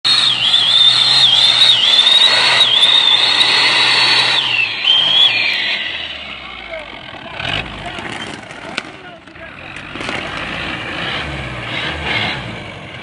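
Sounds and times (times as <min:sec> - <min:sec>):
high drivetrain whine: 0:00.0 - 0:13.0
engine at high revs: 0:00.1 - 0:08.2, 0:09.4 - 0:13.0.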